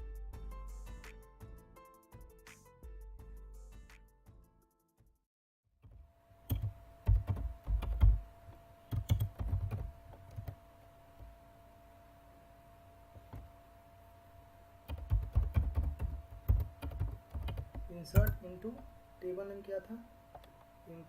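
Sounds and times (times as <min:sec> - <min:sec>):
computer keyboard typing: 0:06.5 - 0:08.2, 0:08.9 - 0:10.6, 0:14.9 - 0:18.5.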